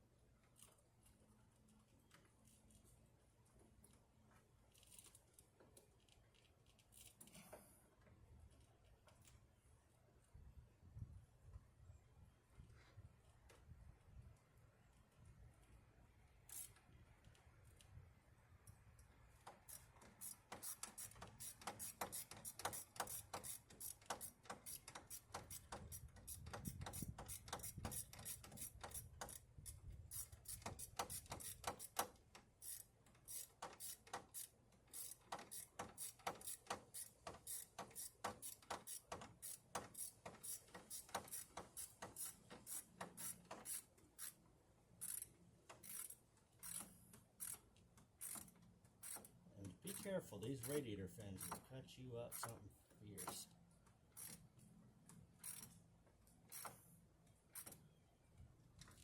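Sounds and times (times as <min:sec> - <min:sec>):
hand tools clicking on metal: 0:19.5 - 0:44.3, 0:49.9 - 0:50.8, 0:52.3 - 0:52.6, 0:53.2 - 0:53.5.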